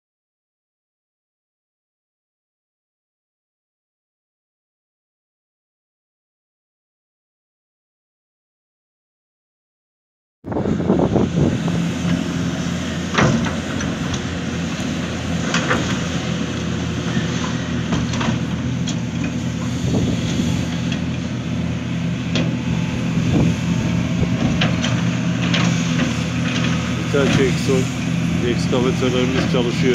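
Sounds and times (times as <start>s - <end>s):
excavator diesel engine running: 10.5s - 29.9s
sharp knocks and clanks: 13.1s - 14.2s.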